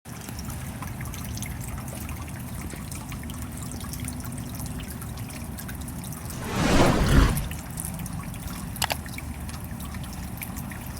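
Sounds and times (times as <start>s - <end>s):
rush of noise: 6.4s - 7.6s.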